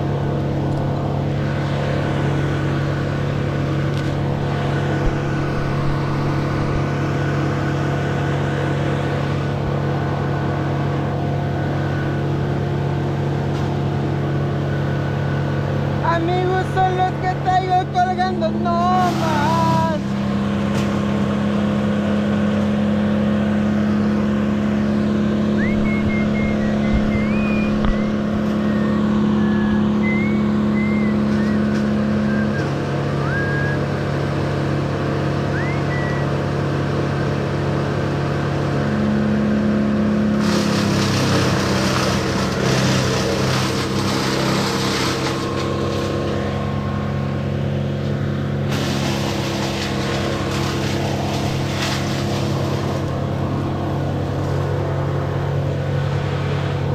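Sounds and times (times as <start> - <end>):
rough rushing noise: 0.0 - 14.7, 24.2 - 31.7, 40.3 - 47.7, 48.4 - 56.9
motor engine running: 0.0 - 56.9.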